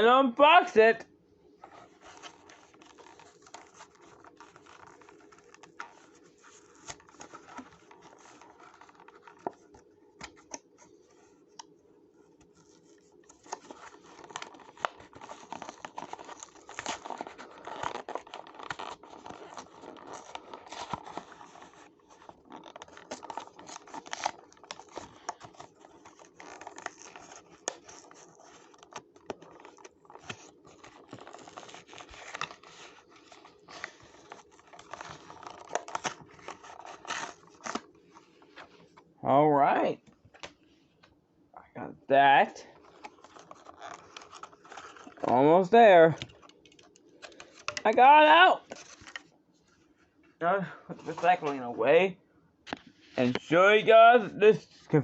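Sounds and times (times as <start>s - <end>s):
hands tearing packaging: 1.8s - 10.8s, 12.4s - 38.7s, 42.7s - 45.4s.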